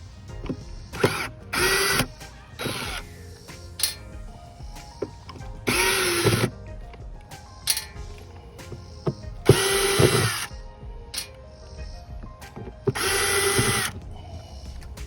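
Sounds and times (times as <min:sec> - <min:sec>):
cordless drill running: 0:00.9 - 0:03.1, 0:05.6 - 0:06.5, 0:09.4 - 0:10.5, 0:12.9 - 0:14.0
handling clicks: 0:03.8 - 0:04.2, 0:07.3 - 0:08.0, 0:11.2 - 0:11.4.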